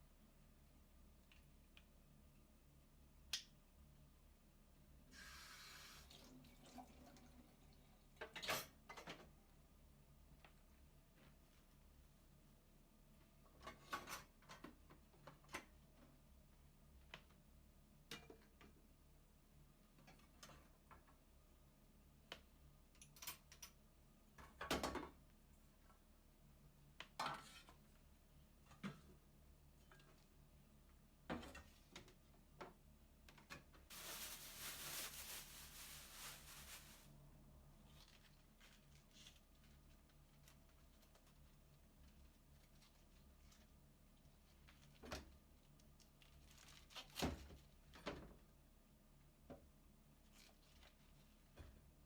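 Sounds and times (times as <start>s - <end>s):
rustling hiss: 33.9s - 37.1s.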